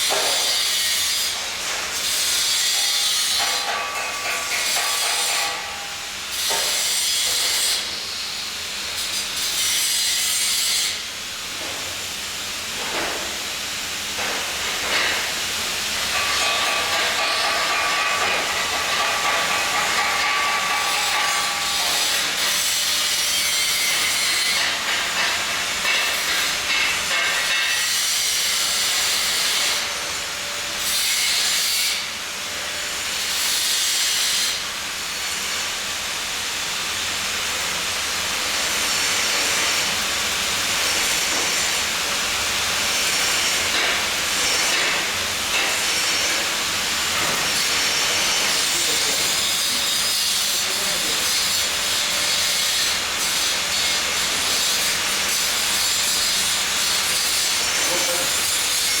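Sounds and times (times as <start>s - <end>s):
welding arc hissing and crackling: 0.0s - 59.0s.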